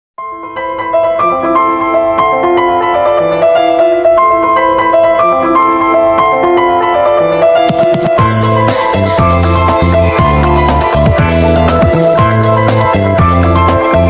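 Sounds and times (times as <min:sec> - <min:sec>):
quick piano melody: 0:00.2 - 0:14.0.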